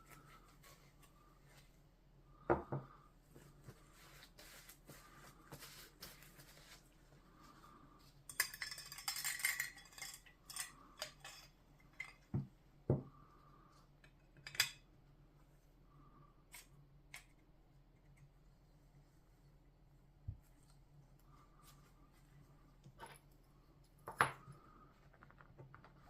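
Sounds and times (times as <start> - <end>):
small metal parts clinking: 8.3 - 12.2.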